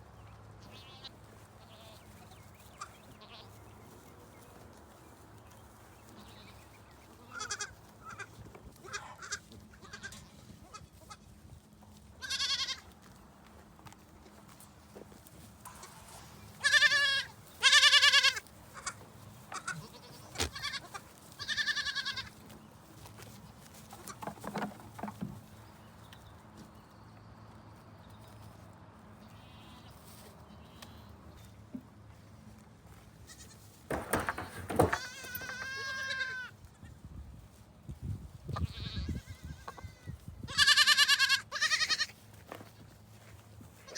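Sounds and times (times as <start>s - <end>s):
goats bleating: 0.6s - 3.6s, 6.1s - 11.3s, 12.2s - 13.0s, 15.6s - 22.4s, 29.3s - 31.1s, 33.3s - 36.6s, 38.5s - 42.2s
knocks and clattering: 33.9s - 35.7s.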